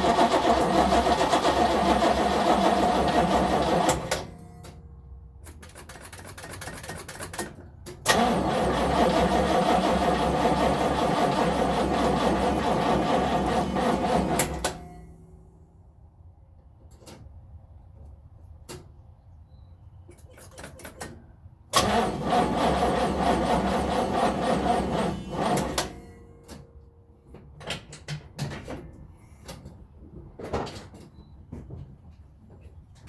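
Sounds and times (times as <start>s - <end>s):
engine starter cranking: 0.0s - 4.8s, 5.4s - 15.1s, 20.1s - 26.6s.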